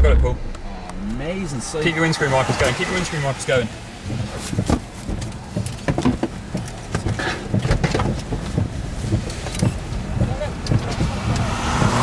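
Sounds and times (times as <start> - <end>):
low car rumble: 0.0 - 12.0
rain tapping on car windscreen: 2.7 - 12.0.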